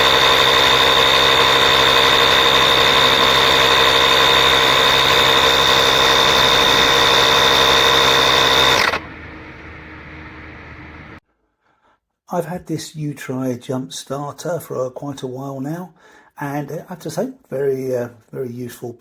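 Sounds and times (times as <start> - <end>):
motor with high-pitched whine: 0.0 - 11.2
faint hum: 8.4 - 11.2.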